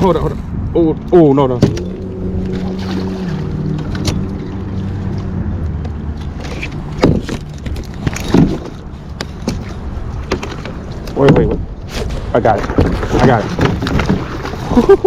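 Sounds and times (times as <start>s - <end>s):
low motor hum: 1.5s - 11.0s
gear knocking against kayak: 5.2s - 11.8s.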